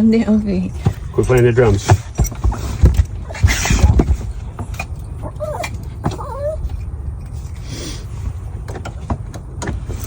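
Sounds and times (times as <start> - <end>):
low rumble of car: 0.0 - 10.0
dog whining: 4.6 - 7.0.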